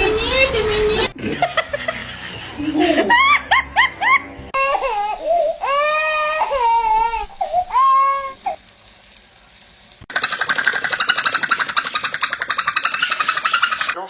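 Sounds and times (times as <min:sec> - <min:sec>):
parrot wailing like a baby: 0:10.2 - 0:14.0.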